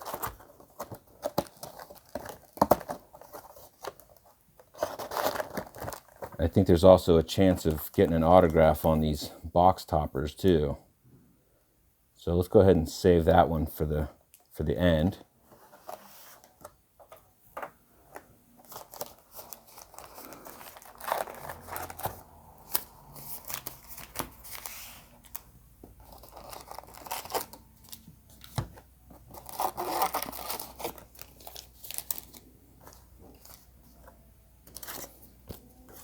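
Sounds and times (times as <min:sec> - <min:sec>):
plastic wrapping tearing and crinkling: 0:18.6 - 0:25.4, 0:26.0 - 0:28.0, 0:29.3 - 0:32.4.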